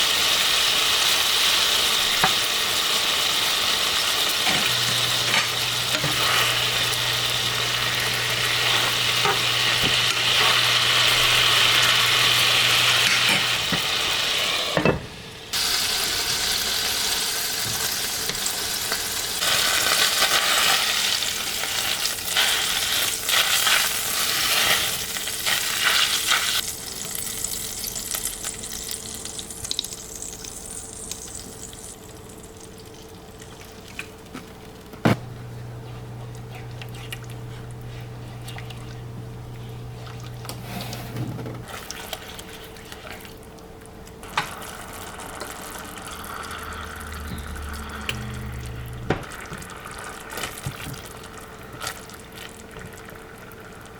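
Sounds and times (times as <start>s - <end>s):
meat sizzling in a frying pan: 0.0s - 14.8s, 15.5s - 32.8s.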